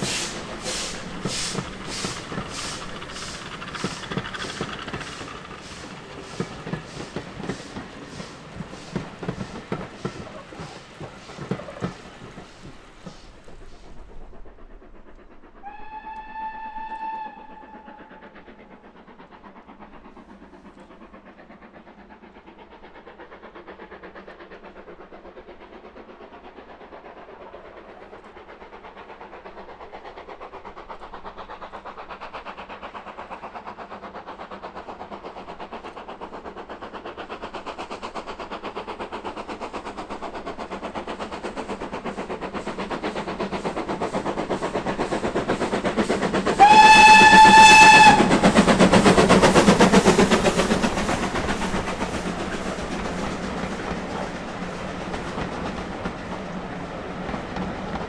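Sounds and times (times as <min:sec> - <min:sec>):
steam locomotive exhaust beats: 0:00.0 - 0:58.0
steam whistle blowing: 0:15.6 - 0:18.1, 0:46.5 - 0:49.3.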